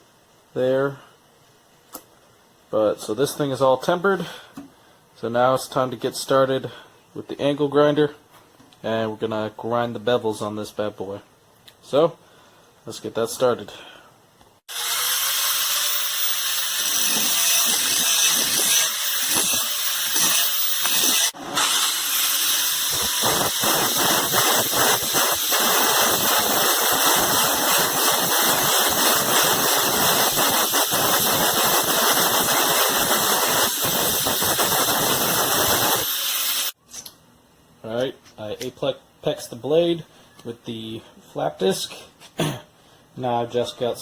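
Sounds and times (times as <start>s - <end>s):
angle grinder grinding steel: 14.7s - 36.8s.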